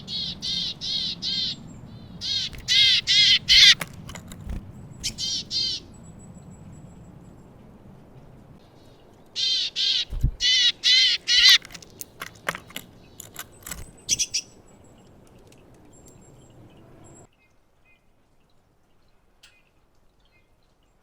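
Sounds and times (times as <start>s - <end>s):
bird buzzing calls: 2.2s - 5.9s, 9.4s - 14.5s
sharp clicks: 11.2s - 14.3s.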